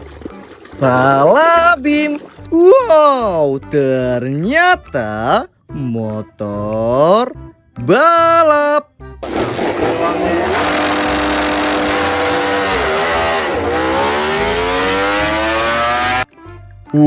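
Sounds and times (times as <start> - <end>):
racing motorbike engine revving: 9.2 - 16.3.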